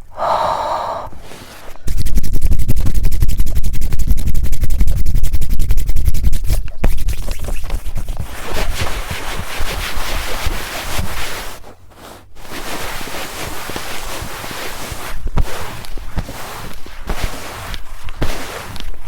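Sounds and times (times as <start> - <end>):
soft hissing rub: 0.0 - 2.1, 6.9 - 19.0
scratching on microphone: 0.5 - 19.0.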